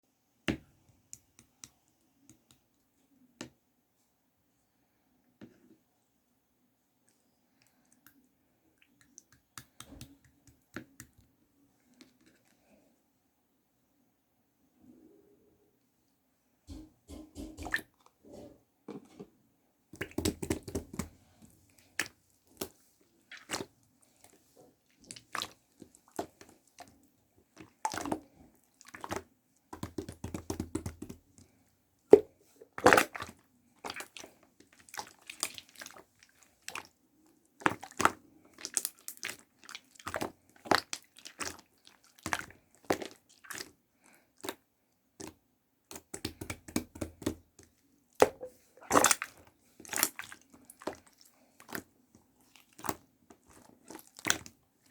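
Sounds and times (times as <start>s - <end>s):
slime squished by hand: 48.2s - 54.6s.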